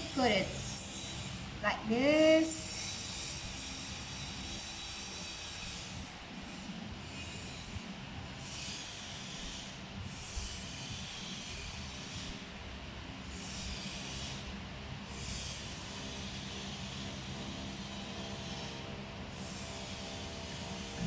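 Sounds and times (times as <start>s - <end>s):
low steady hum: 0.0s - 2.8s
solder flux sizzling: 0.0s - 7.3s.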